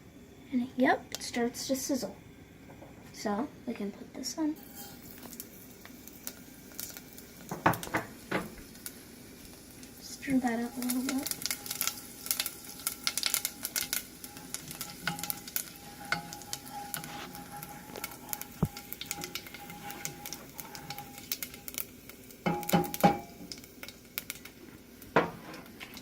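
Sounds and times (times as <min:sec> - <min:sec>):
oil sizzling in a pan: 0:00.5 - 0:26.0
knocks in a pan: 0:07.5 - 0:08.6, 0:18.6 - 0:19.5, 0:22.4 - 0:23.6, 0:25.1 - 0:25.7.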